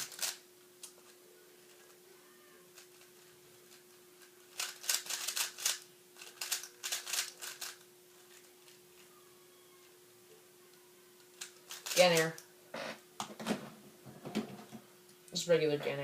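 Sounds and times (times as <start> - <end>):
plastic puzzle cube clacks: 0.0 - 1.9, 2.8 - 7.8.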